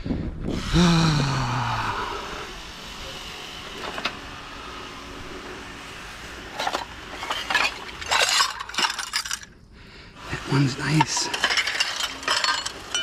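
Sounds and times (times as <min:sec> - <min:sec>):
steady background hum: 0:00.0 - 0:13.0
objects clattering and rattling: 0:03.8 - 0:04.2, 0:06.4 - 0:09.6, 0:10.8 - 0:13.0.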